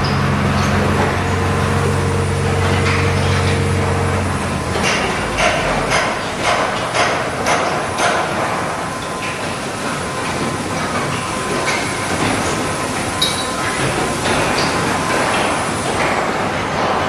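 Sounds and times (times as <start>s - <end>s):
sharp mechanical beats: 0.0s - 8.9s
industrial machinery humming: 0.0s - 17.0s.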